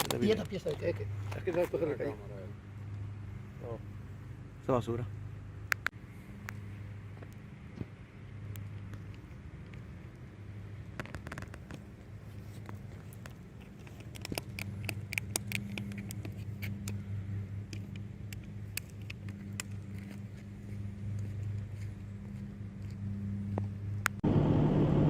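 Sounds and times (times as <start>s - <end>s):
low engine hum: 0.1s - 25.0s
sharp clicks and light crackles: 10.9s - 11.9s, 12.6s - 17.0s.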